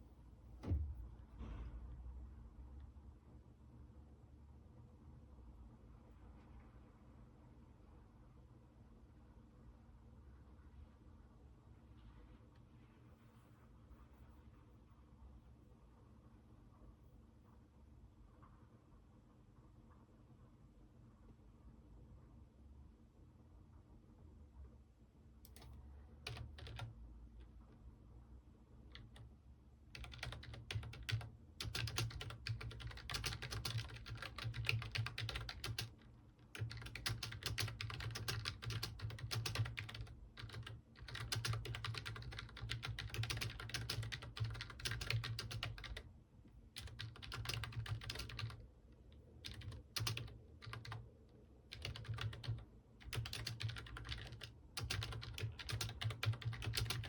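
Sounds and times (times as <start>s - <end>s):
computer keyboard typing: 25.5s - 27.0s, 28.9s - 29.3s, 29.9s - 46.1s, 46.8s - 51.0s, 51.7s - 57.0s.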